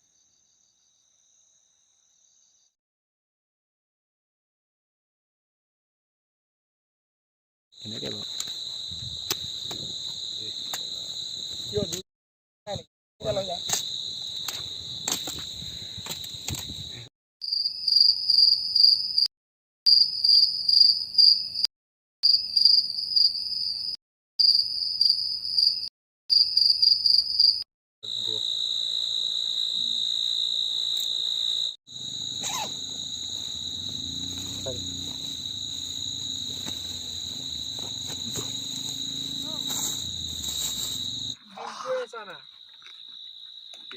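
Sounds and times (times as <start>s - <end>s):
insects trilling: 7.8s - 12.0s, 24.4s - 43.9s.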